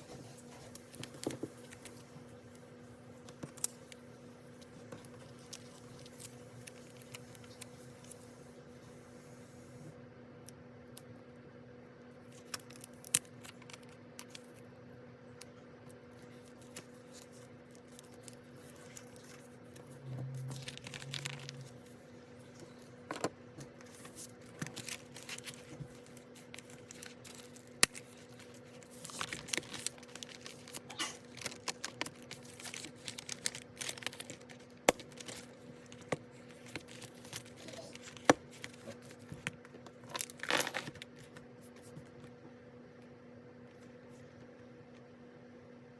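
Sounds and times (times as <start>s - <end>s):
paper rustling and crinkling: 16.2s - 42.0s
low hum: 17.8s - 29.2s.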